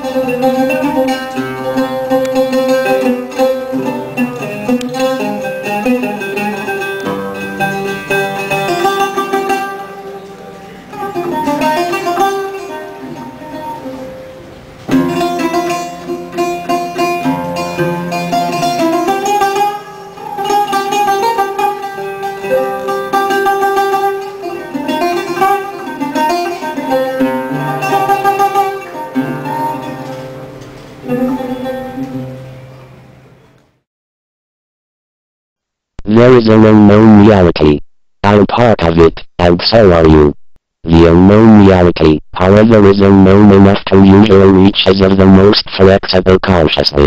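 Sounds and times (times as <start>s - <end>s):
plucked string instrument: 0.0s - 33.7s.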